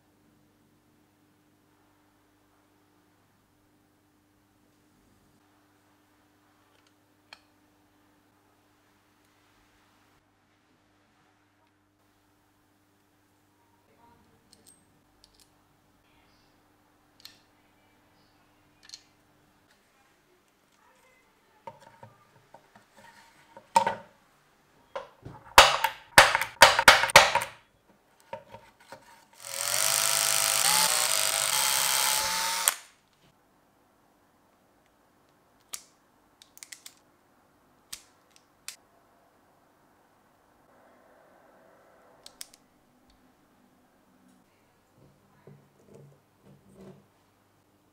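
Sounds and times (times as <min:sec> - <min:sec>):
power drill running: 0:29.4 - 0:32.9.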